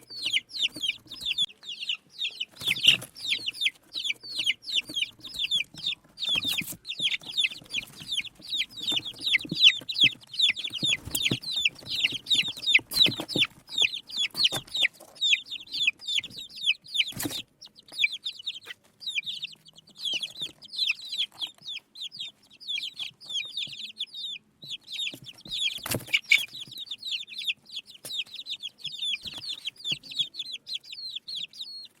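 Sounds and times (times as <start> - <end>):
baby chicks peeping: 0.0 - 32.0.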